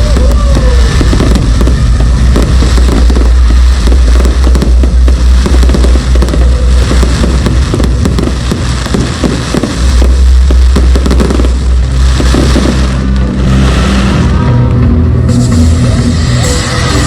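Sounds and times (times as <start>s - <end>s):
fireworks bangs and crackles: 0.0s - 17.0s
low rumble: 0.0s - 17.0s.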